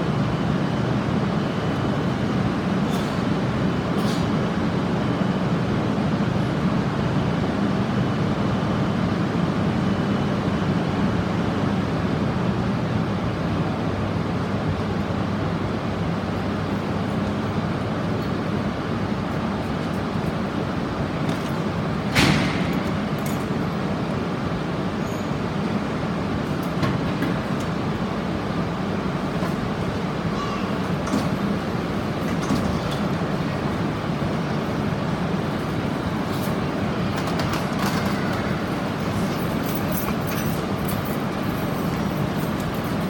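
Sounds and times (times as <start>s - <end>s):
train low rumble: 0.0s - 43.0s.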